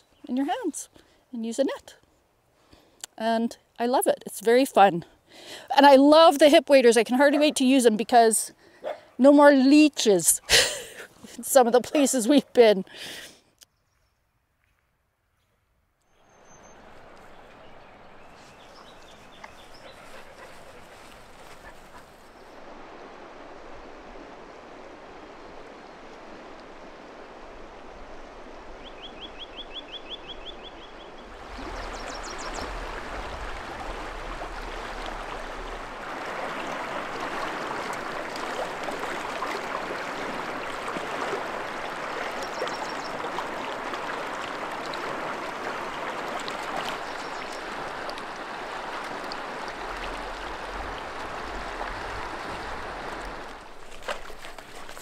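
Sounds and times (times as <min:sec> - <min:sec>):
river water rushing over rocks: 0:31.4 - 0:55.0.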